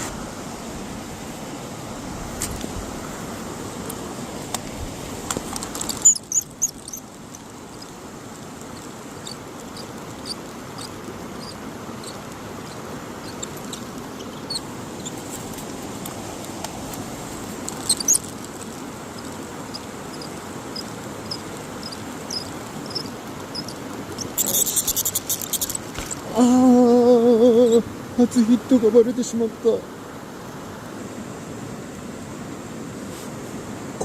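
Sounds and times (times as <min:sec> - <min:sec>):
stream water rushing: 0:00.0 - 0:34.0
rapid clicking: 0:05.2 - 0:26.2.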